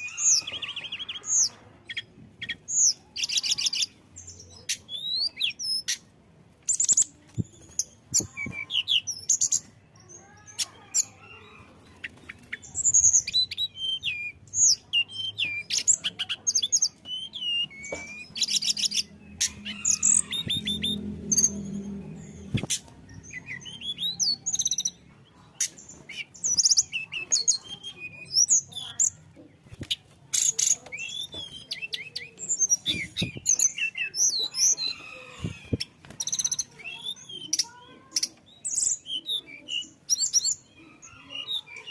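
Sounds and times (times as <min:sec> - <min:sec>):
flycatcher singing: 0:12.1 - 0:25.0.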